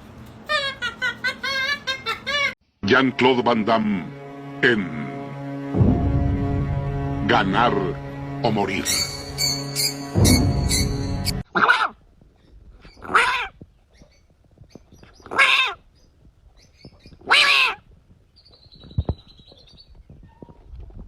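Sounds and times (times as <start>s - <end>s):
animal crying: 13.0s - 13.5s, 17.2s - 17.8s.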